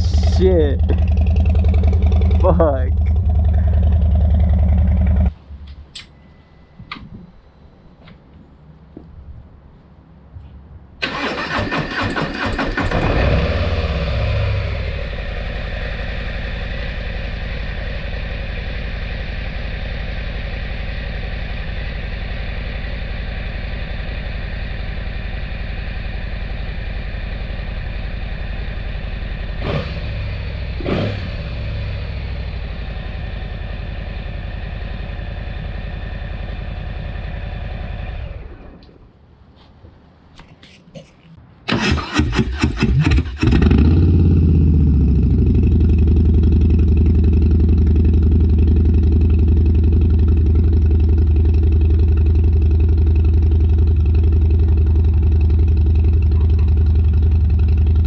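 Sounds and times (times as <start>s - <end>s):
motorcycle engine idling: 0.0s - 5.3s, 12.9s - 38.8s, 43.5s - 58.0s
motorcycle throttle blips: 0.0s - 6.2s, 43.4s - 58.0s
motorcycle starter cranking: 11.0s - 13.3s, 41.7s - 43.8s.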